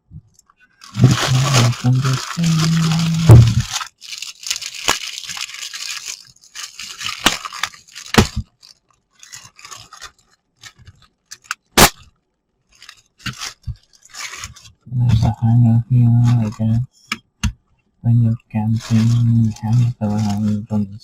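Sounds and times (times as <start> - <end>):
packaging crinkling and tearing: 0.8 - 12.1, 12.7 - 14.7, 18.7 - 20.6.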